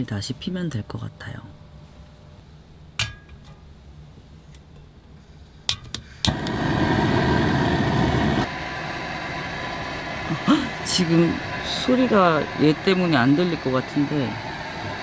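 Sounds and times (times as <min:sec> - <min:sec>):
appliance motor whirring: 0:06.2 - 0:15.0.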